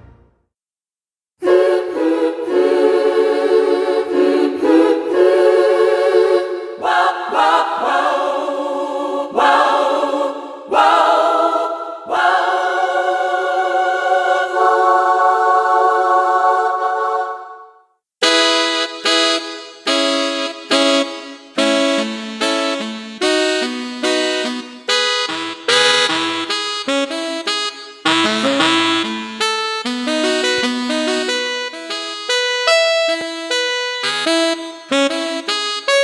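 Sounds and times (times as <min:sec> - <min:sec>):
keyboard choir chords: 0:01.4 - 0:36.0.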